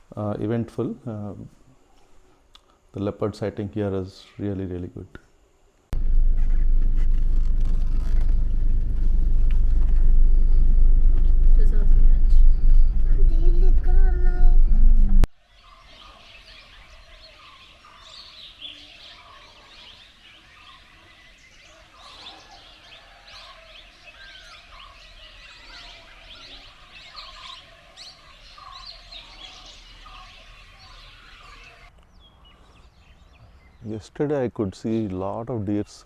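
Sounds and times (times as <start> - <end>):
dense chorus of bird chirps: 15.4 - 36.0.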